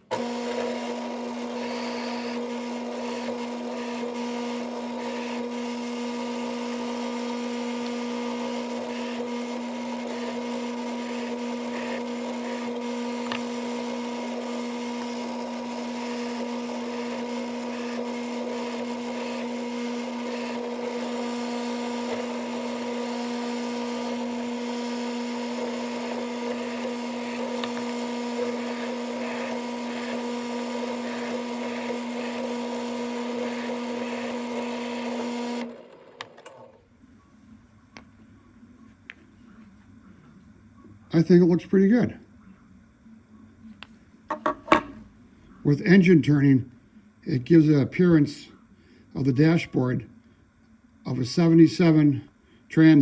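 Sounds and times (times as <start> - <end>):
drill press motor humming: 0.0 - 36.8.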